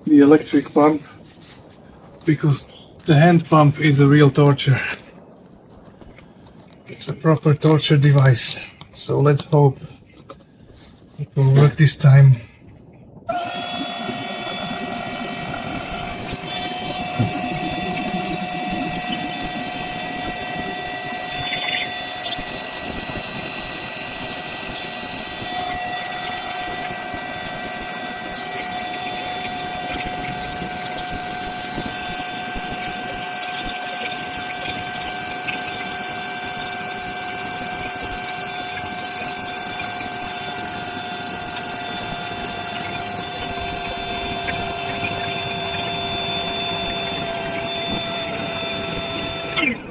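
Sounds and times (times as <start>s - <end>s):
electric air pump whining: 13.3s - 49.9s.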